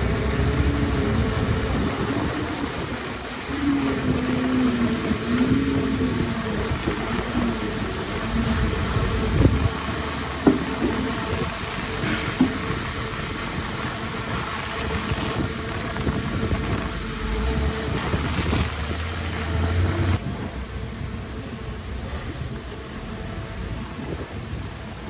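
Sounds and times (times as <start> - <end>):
diesel earthmoving machinery: 0.0 - 25.0
metal clanks: 7.2 - 13.2.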